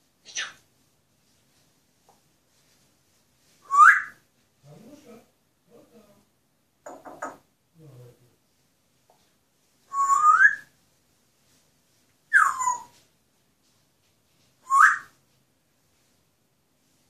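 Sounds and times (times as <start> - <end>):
parrot whistling: 3.6 - 4.2, 9.9 - 10.7, 12.3 - 12.9, 14.6 - 15.2.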